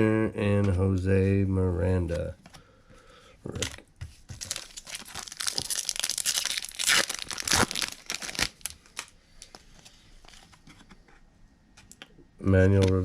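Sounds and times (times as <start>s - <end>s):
plastic wrapper crinkling and tearing: 3.5s - 10.5s.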